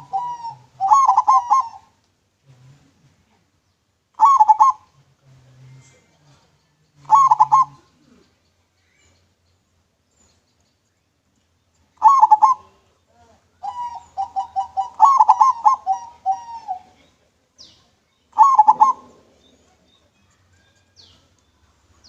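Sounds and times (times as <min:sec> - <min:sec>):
dove cooing: 0:00.0 - 0:02.0, 0:04.2 - 0:05.0, 0:07.0 - 0:08.4, 0:12.0 - 0:12.8, 0:13.6 - 0:17.2, 0:18.4 - 0:20.0.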